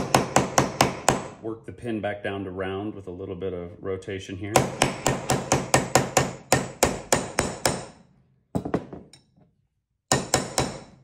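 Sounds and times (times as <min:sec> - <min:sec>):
hammer tapping metal tool: 0:04.6 - 0:09.5, 0:10.1 - 0:11.0.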